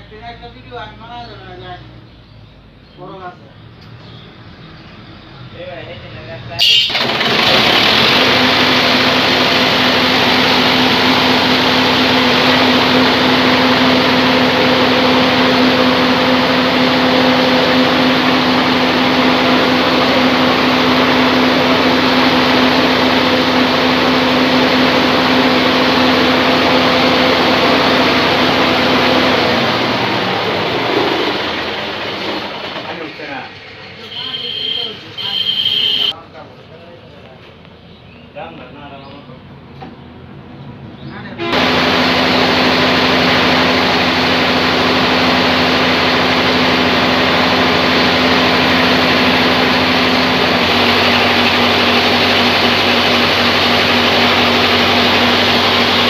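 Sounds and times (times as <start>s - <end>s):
band saw machinery running: 6.6s - 36.2s, 41.4s - 56.0s.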